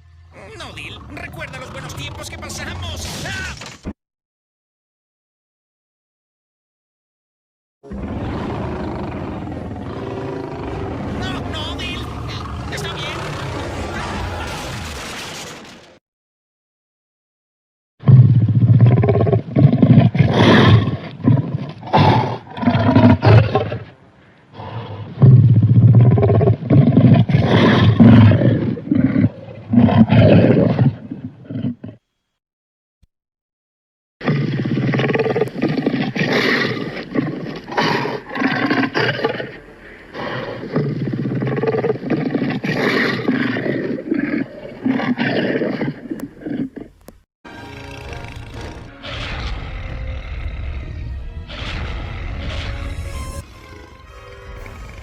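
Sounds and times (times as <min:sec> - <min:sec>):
dinosaur roaring: 0:00.0 - 0:02.9, 0:07.8 - 0:15.0, 0:18.0 - 0:23.9, 0:24.5 - 0:32.0, 0:34.2 - 0:46.9, 0:47.5 - 0:55.0.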